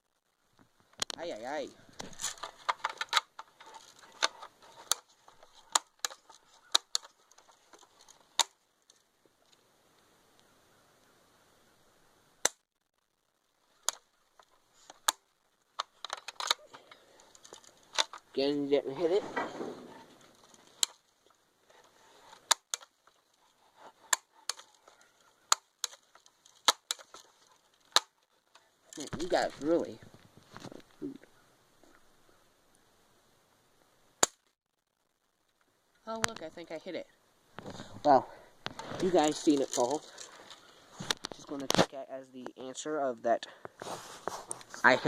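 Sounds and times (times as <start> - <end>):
air rifle clicks and taps: 2.0 - 8.6, 15.8 - 16.7, 17.4 - 18.3, 22.3 - 23.2, 25.5 - 27.3
air rifle pump lever clicks: 22.2 - 23.2.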